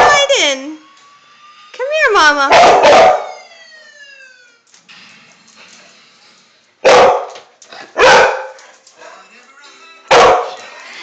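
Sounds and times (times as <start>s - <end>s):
dog barking: 2.5s - 3.4s, 6.8s - 8.6s, 10.1s - 10.6s.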